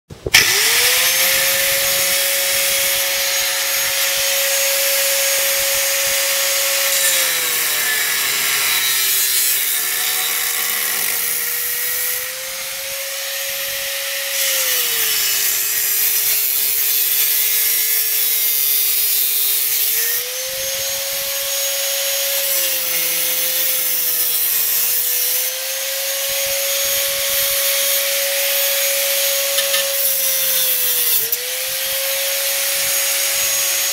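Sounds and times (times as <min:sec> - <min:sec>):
abrasive grinding on metal: 0:00.3 - 0:13.0, 0:29.2 - 0:31.4
electric power tool motor: 0:00.3 - 0:33.9.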